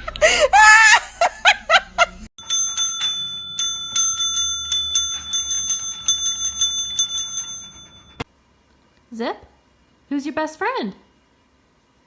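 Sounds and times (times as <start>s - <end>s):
small metal bell struck rapidly: 2.4s - 8.2s.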